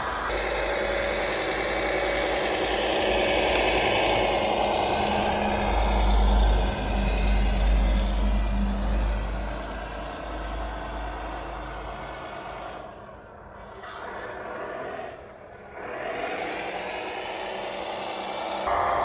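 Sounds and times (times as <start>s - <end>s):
electric drive whirring: 0.0s - 12.9s
heavy low rumble: 0.0s - 15.0s.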